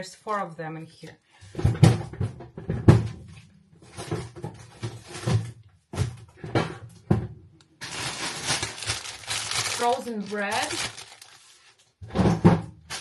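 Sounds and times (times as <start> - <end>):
plastic packaging crinkling: 7.6 - 12.0.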